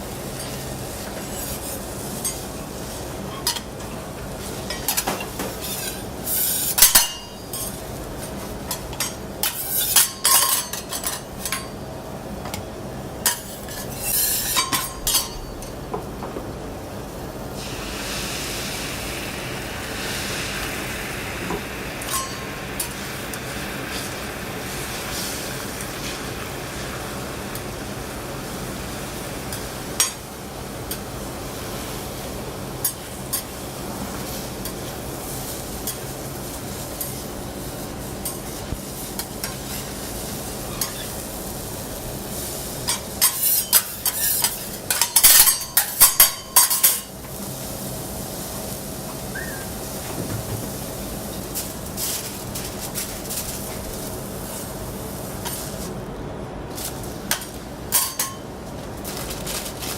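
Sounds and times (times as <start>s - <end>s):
egg sizzling in a pan: 17.5s - 50.1s.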